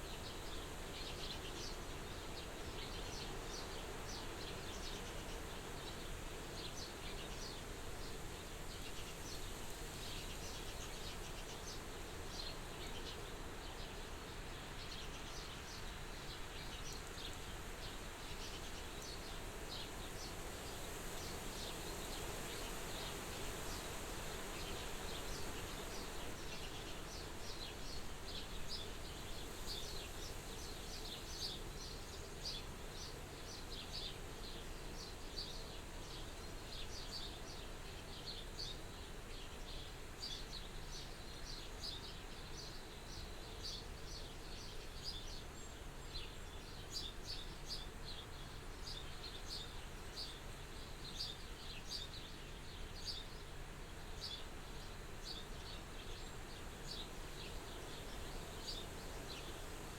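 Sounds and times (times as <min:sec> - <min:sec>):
soft wind hissing: 0:00.0 - 0:59.9.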